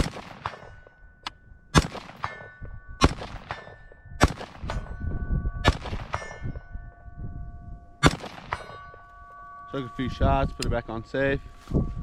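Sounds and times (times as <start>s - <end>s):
rifle shots: 0.0s - 0.8s, 1.7s - 4.9s, 5.6s - 6.4s, 8.0s - 8.9s
bullet ringing steel target: 0.0s - 7.1s, 7.9s - 11.4s.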